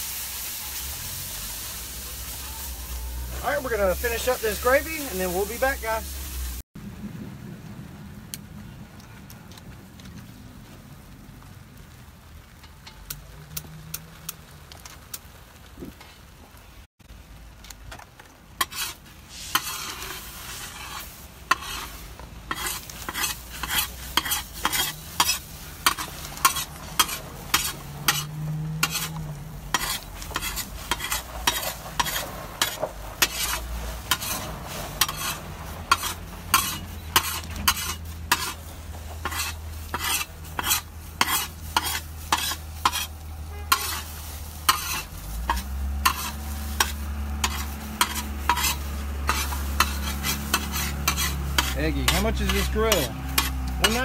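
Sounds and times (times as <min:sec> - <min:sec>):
sizzling: 0:00.0 - 0:09.1, 0:09.8 - 0:54.0
utensil scraping and tapping pan: 0:18.6 - 0:18.9, 0:19.5 - 0:21.9, 0:22.5 - 0:38.6, 0:39.2 - 0:43.1, 0:43.7 - 0:44.1, 0:44.7 - 0:54.0.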